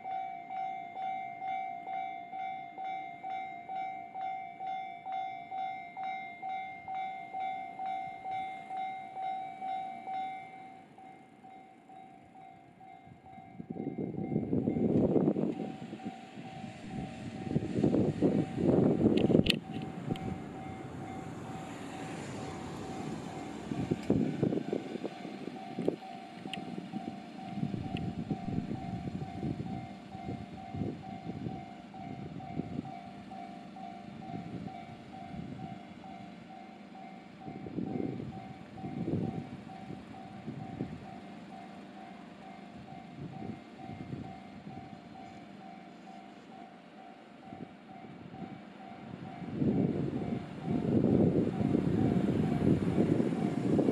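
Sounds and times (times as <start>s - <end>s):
level crossing bell alarm: 0.0s - 53.9s
train rumbling over rails: 0.0s - 53.9s.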